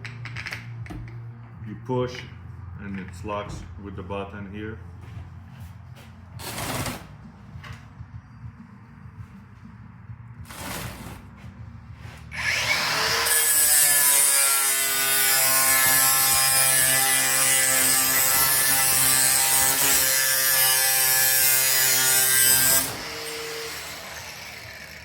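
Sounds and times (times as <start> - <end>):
angle grinder whine: 12.3 - 25.0.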